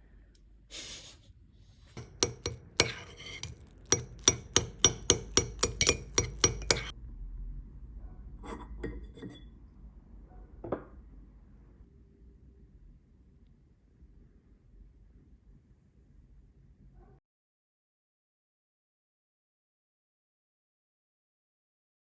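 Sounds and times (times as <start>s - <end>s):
glass vials clinking: 2.0s - 6.9s.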